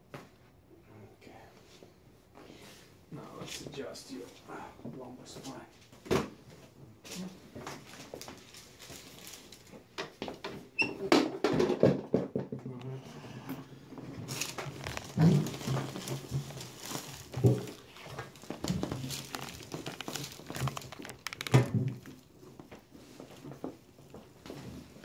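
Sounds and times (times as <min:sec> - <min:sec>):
crinkling and rustling: 0:05.0 - 0:10.7, 0:11.4 - 0:25.0.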